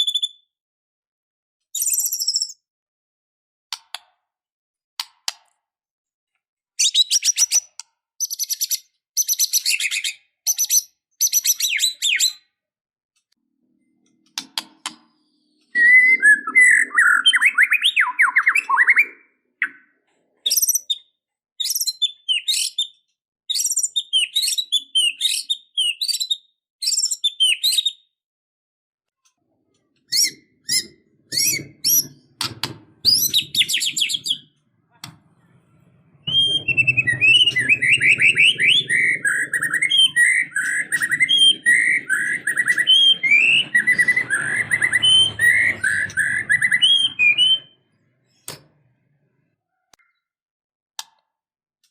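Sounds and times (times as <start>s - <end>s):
bird singing: 1.8s - 2.7s, 15.0s - 28.0s, 30.0s - 35.0s, 36.1s - 48.5s.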